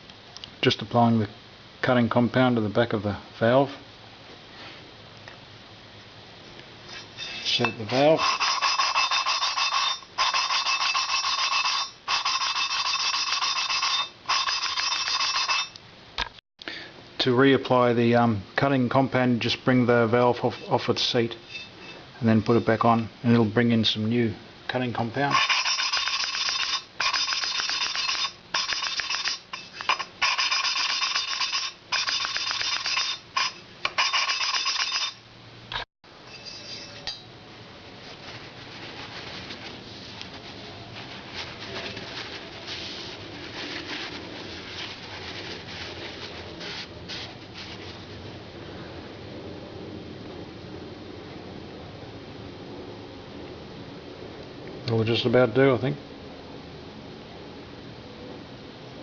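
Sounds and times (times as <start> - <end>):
faint scratching: 6.9 - 15.7, 37.9 - 48.3.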